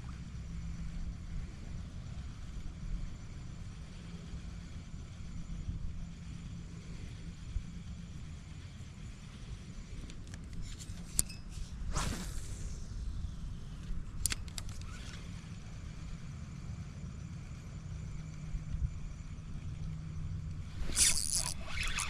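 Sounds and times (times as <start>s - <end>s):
short whoosh: 11.7s - 13.1s
sharp clicks: 13.8s - 15.1s.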